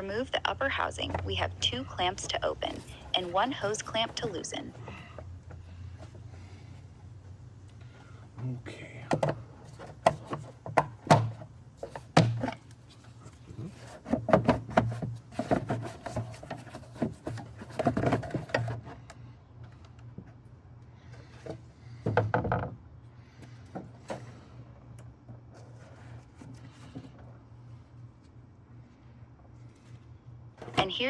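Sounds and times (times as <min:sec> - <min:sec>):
plastic rubbing and rattling: 0:11.8 - 0:19.1.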